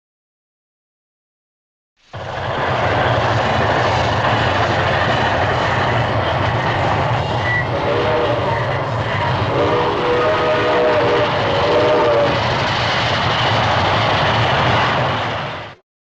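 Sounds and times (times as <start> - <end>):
train rumble and clatter: 2.1 - 15.8
train whistle chord: 7.4 - 12.4.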